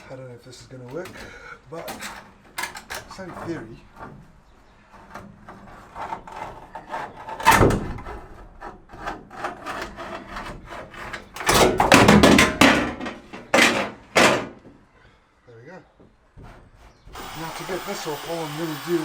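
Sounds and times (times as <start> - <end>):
wire sawing through tape on metal: 8.1 - 11.5, 16.5 - 19.0.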